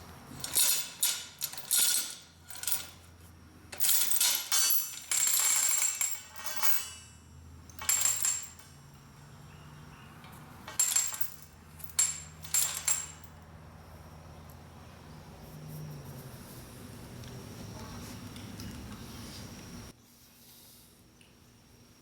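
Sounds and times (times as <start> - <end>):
metal chain hoist parts clinking: 0.3 - 3.0, 3.7 - 8.9, 10.7 - 13.4.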